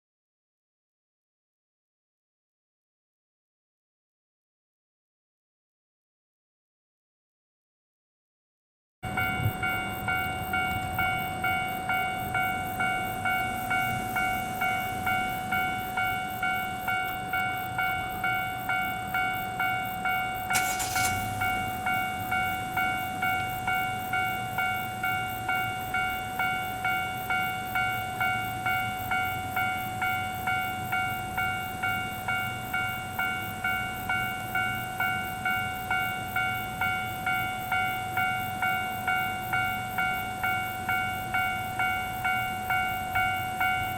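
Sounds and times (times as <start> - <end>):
level-crossing electronic bell: 9.0 - 43.9
brief hiss: 20.5 - 21.9.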